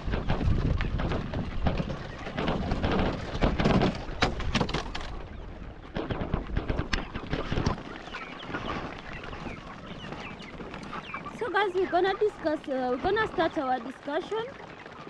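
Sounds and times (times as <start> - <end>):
wind on microphone: 0.0 - 13.6
chickens tapping at feeders: 0.0 - 15.0
chick peeps: 4.8 - 15.0.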